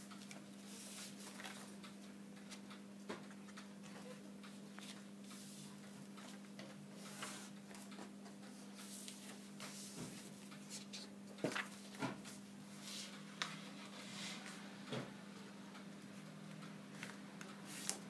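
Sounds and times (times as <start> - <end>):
paper rustling and crinkling: 0.8 - 1.7, 9.0 - 12.4.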